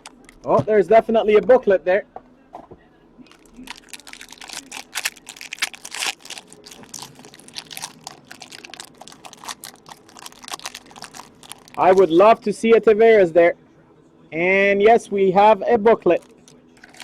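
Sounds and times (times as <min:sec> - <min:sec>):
crinkling card packaging: 0:03.3 - 0:12.3, 0:16.1 - 0:17.0.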